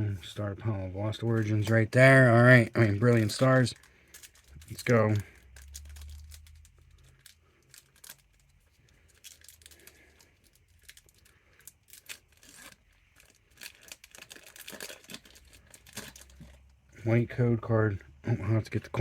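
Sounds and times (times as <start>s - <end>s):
packaging crackling and tearing: 2.8s - 16.7s.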